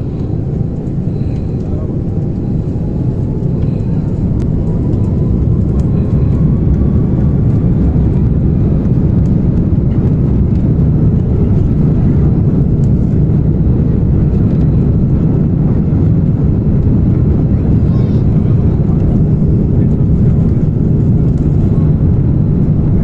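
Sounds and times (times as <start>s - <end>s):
jet engines rumbling: 0.0s - 23.0s.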